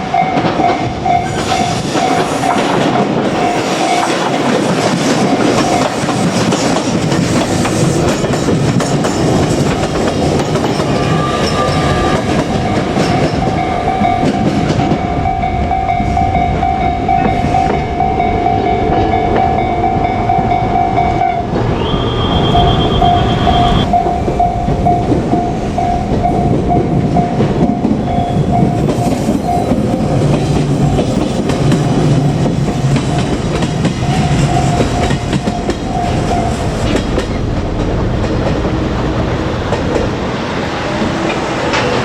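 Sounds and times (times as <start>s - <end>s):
train wheels clattering over rail joints: 0.3s - 15.2s
level crossing warning tone: 10.7s - 30.2s, 32.2s - 37.3s
higher tone: 11.0s - 27.4s.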